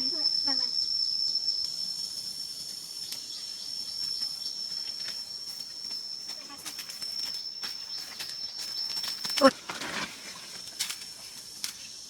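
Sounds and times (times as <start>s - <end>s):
high-pitched insect drone: 0.0s - 9.6s.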